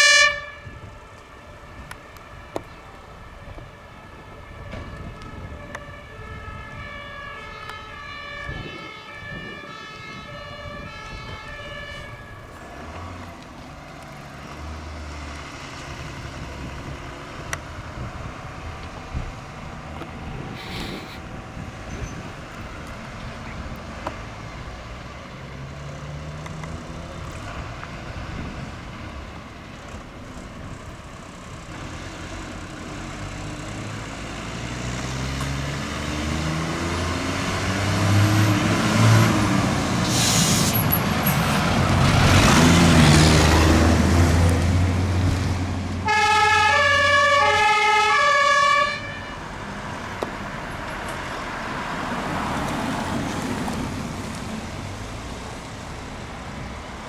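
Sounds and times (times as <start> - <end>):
two-tone emergency siren: 0.0 - 13.3, 46.0 - 49.8
vehicle engine speeding up: 31.8 - 46.0.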